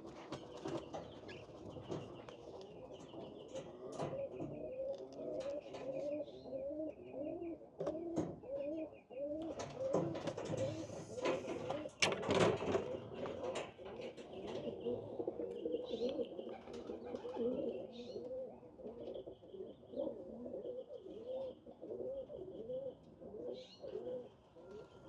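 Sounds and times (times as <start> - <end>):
pigeons cooing: 0.0 - 25.0
knocks and taps from cages: 0.1 - 6.0, 7.8 - 8.6, 9.4 - 15.0.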